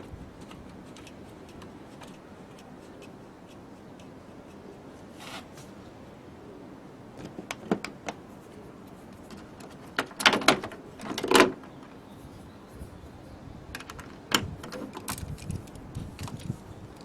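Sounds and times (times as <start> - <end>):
hard parts knocking together: 9.6 - 11.8.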